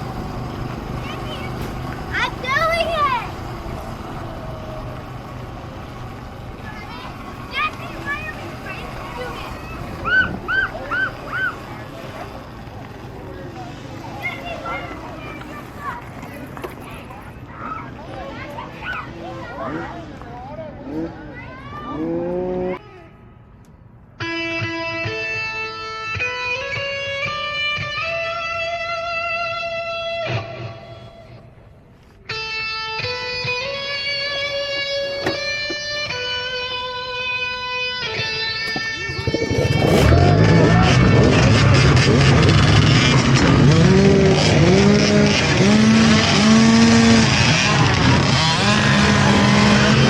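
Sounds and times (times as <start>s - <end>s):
dirt bike engines revving: 0.0s - 22.8s, 32.4s - 50.0s
electric guitar music with beat: 24.2s - 31.0s, 32.3s - 40.0s.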